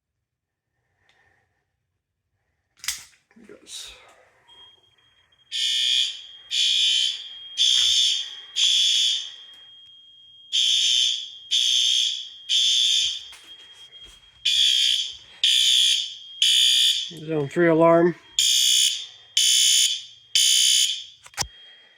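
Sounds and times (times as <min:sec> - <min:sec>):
steady high-pitched tone: 0:04.5 - 0:18.4
fire alarm horn blasts: 0:05.4 - 0:21.4.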